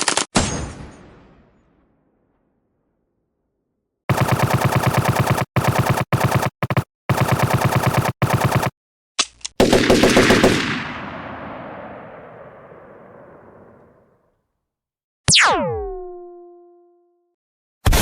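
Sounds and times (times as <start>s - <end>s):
machine gun firing: 4.1s - 8.8s, 9.6s - 13.8s.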